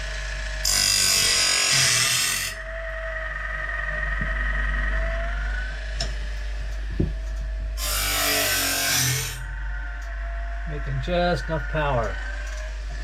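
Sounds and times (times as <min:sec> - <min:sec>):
grinder grinding metal blade: 0:00.0 - 0:02.6, 0:07.8 - 0:09.5
motor humming: 0:00.0 - 0:13.0.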